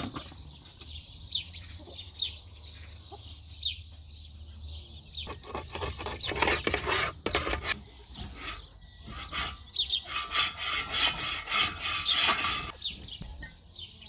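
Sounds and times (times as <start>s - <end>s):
rubbing or scraping strokes: 5.3s - 12.9s.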